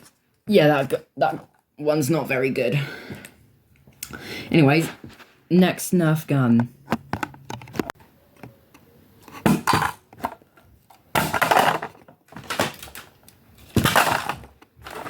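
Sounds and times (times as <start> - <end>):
plastic toy blasters clattering: 11.1 - 15.0.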